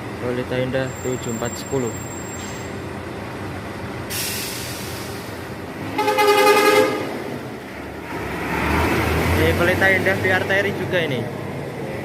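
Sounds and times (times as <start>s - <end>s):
hiss: 4.1s - 5.3s
bus horn blast: 5.9s - 7.3s.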